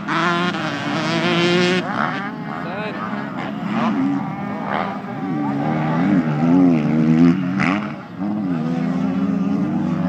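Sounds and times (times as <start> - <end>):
motocross bike engines revving: 0.0 - 10.0.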